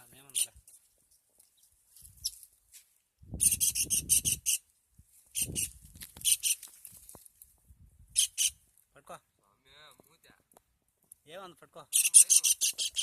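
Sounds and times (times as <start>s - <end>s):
kingfisher calling shrill notes: 3.4s - 4.6s, 5.3s - 6.6s, 8.2s - 8.6s, 11.9s - 13.0s.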